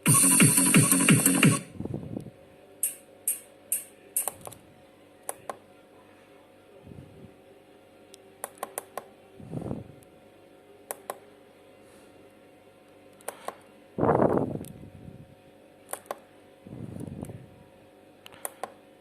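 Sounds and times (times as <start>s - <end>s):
sharp clicks: 2.8s - 4.6s.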